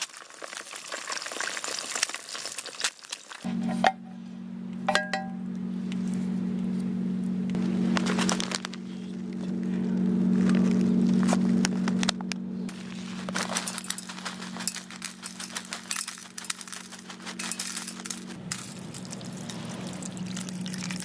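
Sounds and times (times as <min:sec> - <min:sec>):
steady low hum: 0:03.5 - 0:21.0
bright metallic clinks: 0:04.9 - 0:05.5, 0:12.8 - 0:20.8.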